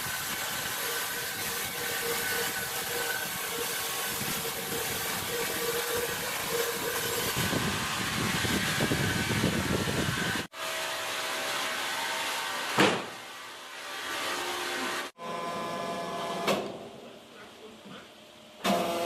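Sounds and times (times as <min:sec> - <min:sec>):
dense machine noise: 0:00.0 - 0:12.4
sharp knock: 0:12.8 - 0:13.2.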